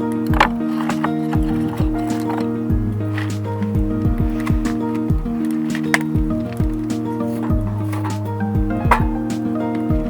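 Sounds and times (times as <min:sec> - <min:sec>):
background music with held tones: 0:00.0 - 0:10.0
low drum hits: 0:08.6 - 0:09.3.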